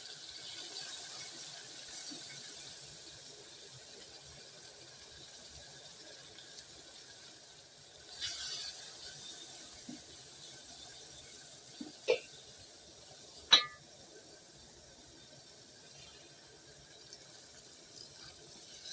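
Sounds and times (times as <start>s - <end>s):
utensil clinking: 13.5s - 13.8s.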